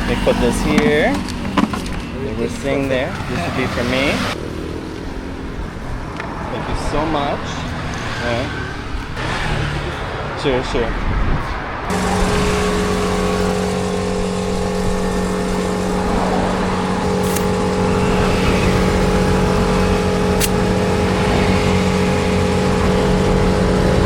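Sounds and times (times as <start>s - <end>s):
engine running steadily: 0.0s - 6.4s, 11.9s - 24.0s.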